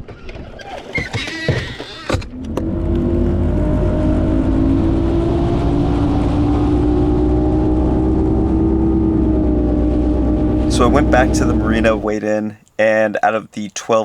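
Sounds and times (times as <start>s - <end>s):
outboard motor running: 2.3s - 12.1s.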